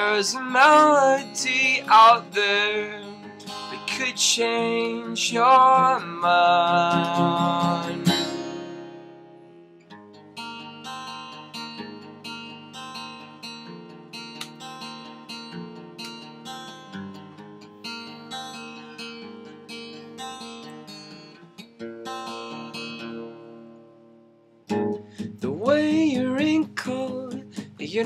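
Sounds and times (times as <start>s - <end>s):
man singing: 0.0s - 8.5s, 25.2s - 28.0s
acoustic guitar strumming: 0.0s - 28.0s.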